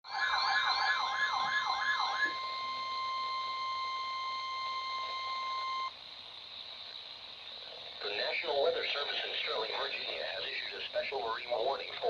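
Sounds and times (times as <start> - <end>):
steady warning alarm tone: 0.0 - 11.8
fast warbling siren tone: 0.1 - 5.9.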